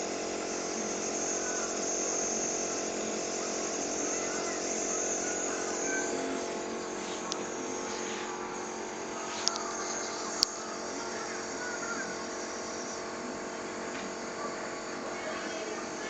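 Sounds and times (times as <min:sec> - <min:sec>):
small motor humming: 0:00.0 - 0:16.0
sharp clicks: 0:10.3 - 0:10.6.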